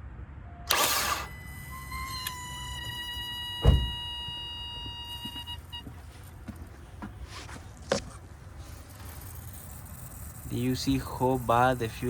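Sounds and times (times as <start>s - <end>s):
electric fuel pump whine: 0.7s - 12.0s
heavy thump: 3.6s - 4.1s.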